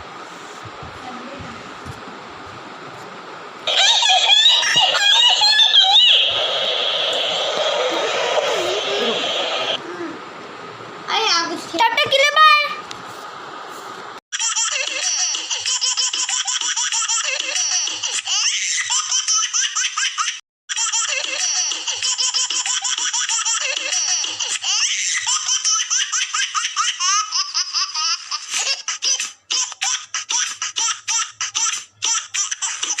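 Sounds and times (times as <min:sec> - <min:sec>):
high-pitched looping laughter: 0:03.7 - 0:09.8, 0:14.4 - 0:33.0.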